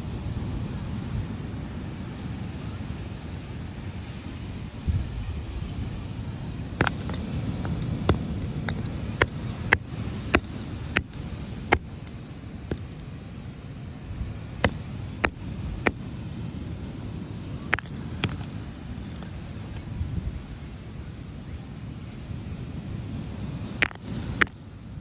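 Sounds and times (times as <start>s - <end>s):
rock striking rock: 6.5s - 13.8s, 14.4s - 19.8s, 23.7s - 24.7s.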